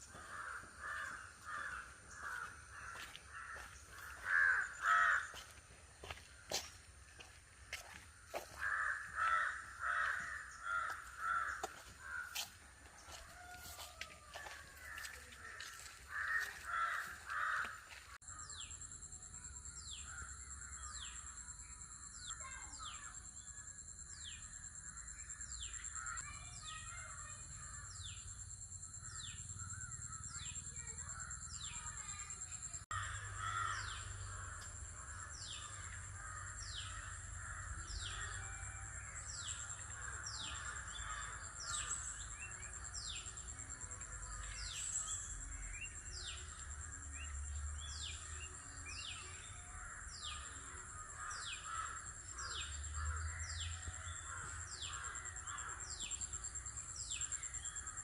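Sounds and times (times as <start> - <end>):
crows cawing: 0.1 - 18.4, 32.9 - 38.4, 39.4 - 42.0, 49.6 - 56.2.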